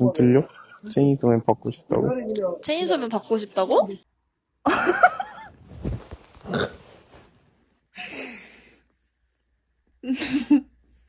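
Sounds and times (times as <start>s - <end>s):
person grunting: 6.5s - 6.8s.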